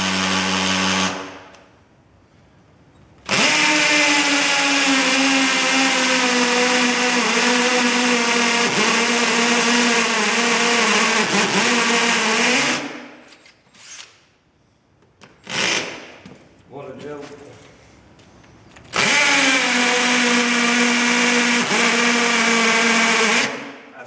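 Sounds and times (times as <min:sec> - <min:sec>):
electric drill whining into concrete: 0:00.0 - 0:01.3, 0:03.3 - 0:12.9.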